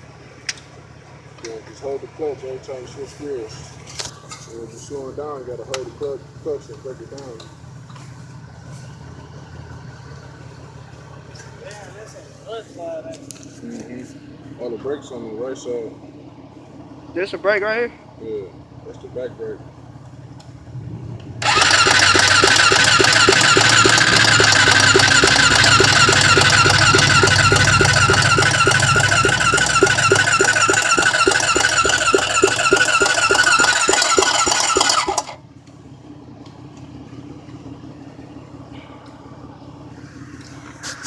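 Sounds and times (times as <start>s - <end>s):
starter motor cranking engine: 20.3s - 35.6s.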